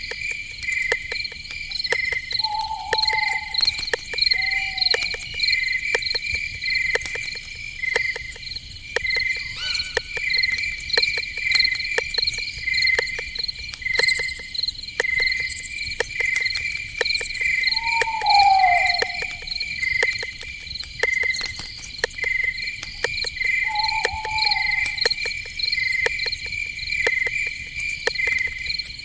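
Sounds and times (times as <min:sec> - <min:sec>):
crickets chirping: 0:00.0 - 0:29.0
sharp ticks: 0:00.0 - 0:29.0
animal calls: 0:02.3 - 0:05.5, 0:09.3 - 0:10.6, 0:17.6 - 0:20.3, 0:23.6 - 0:25.4.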